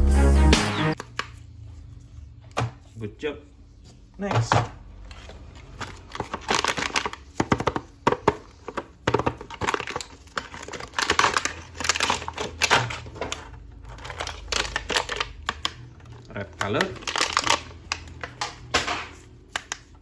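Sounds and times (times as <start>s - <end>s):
plastic packaging crinkling: 5.4s - 20.0s.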